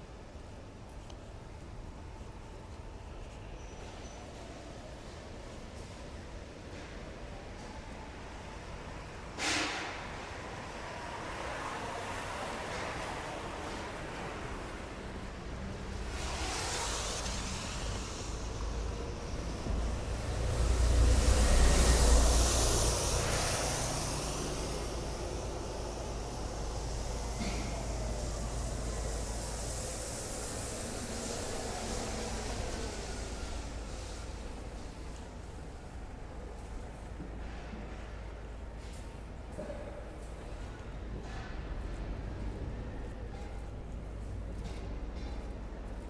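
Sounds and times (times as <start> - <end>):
city street ambience: 0.0 - 46.0
rumble of traffic: 0.0 - 46.0
vehicle passing close: 11.2 - 35.5.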